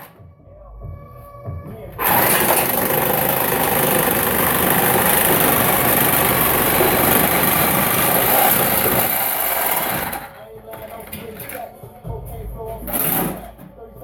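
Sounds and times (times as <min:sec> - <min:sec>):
reciprocating saw cutting metal pipe: 0:02.0 - 0:10.3.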